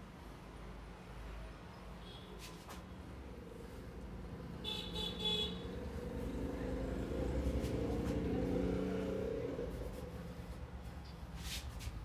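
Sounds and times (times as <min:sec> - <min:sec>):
vehicle engine: 0:05.8 - 0:10.3.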